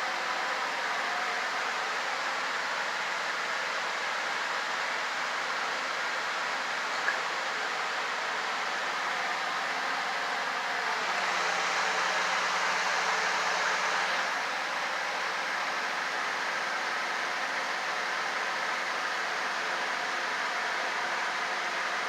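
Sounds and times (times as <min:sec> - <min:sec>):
box fan running: 0:05.2 - 0:22.0.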